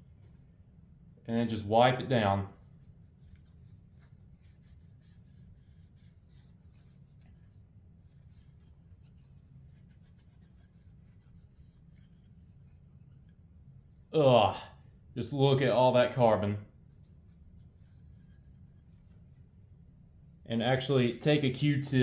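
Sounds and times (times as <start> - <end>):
paper towel rubbing pistol barrel: 2.1 - 14.1, 16.8 - 20.3.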